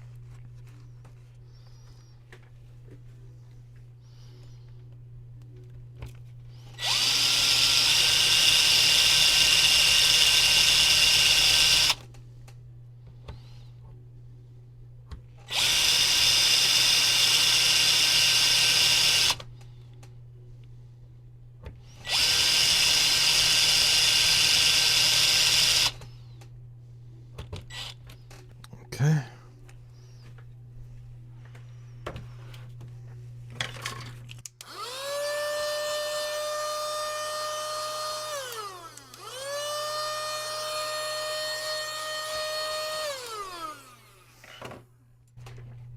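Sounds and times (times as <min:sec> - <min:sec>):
electric drill running: 0:06.8 - 0:12.0, 0:15.5 - 0:19.5, 0:22.0 - 0:26.1, 0:27.7 - 0:28.0, 0:34.6 - 0:44.5.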